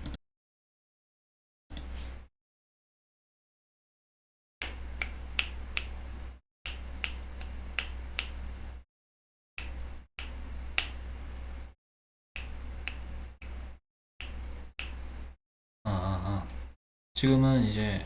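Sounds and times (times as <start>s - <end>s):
electrical hum with hiss: 4.6s - 8.8s, 9.6s - 11.8s, 12.4s - 18.0s.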